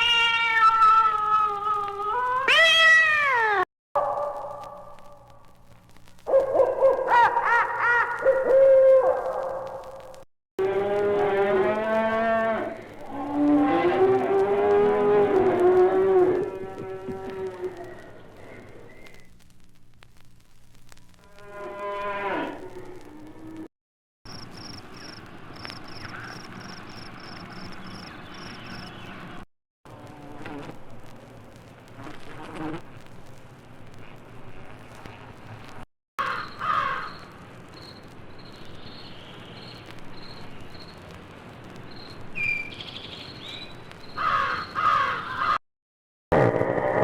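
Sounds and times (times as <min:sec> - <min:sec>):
crickets chirping: 0:24.3 - 0:29.0.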